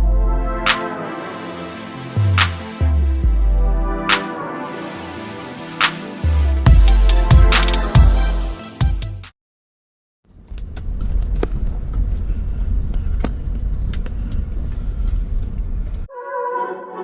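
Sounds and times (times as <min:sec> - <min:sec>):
car engine and tyres rumbling: 0:10.3 - 0:16.1.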